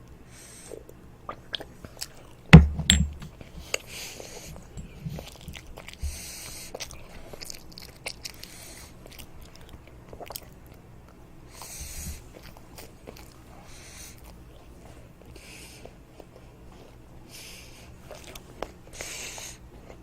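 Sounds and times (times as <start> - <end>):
mouth clicks and chewing: 18.1 - 18.8.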